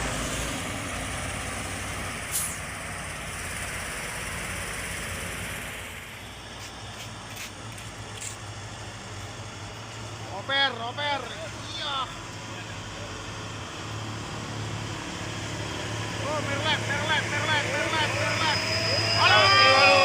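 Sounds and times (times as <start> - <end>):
diesel engine running: 0.0 - 20.0
short high hisses: 2.3 - 2.6.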